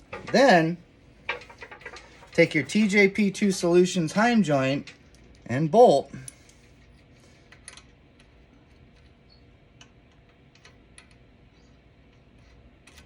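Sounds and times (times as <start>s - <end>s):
small metal parts clicking: 7.5s - 8.3s.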